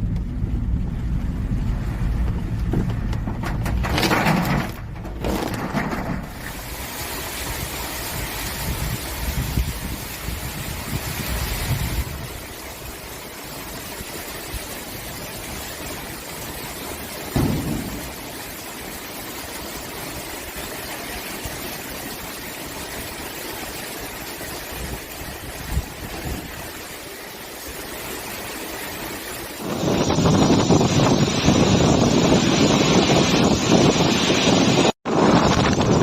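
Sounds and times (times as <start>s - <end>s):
heavy rain downpour: 0.0s - 36.0s
low thump: 2.1s - 6.5s, 17.4s - 18.5s.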